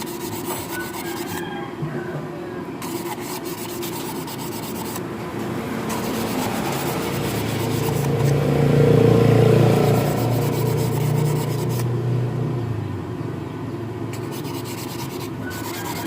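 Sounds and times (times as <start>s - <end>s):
sandpaper rubbing on metal: 0.0s - 1.4s, 2.8s - 5.0s, 5.9s - 8.4s, 9.8s - 11.9s, 14.1s - 16.0s.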